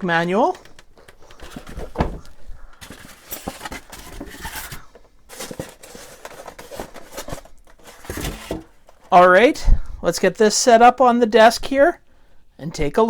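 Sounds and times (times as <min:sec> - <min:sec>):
box contents rustling: 0:00.1 - 0:09.3.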